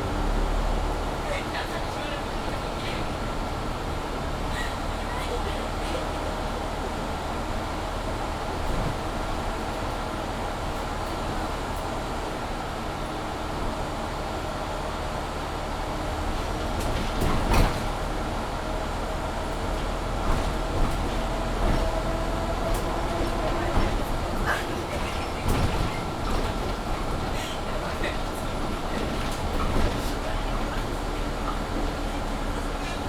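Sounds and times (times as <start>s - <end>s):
bus drive and road rumble: 0.0s - 33.0s.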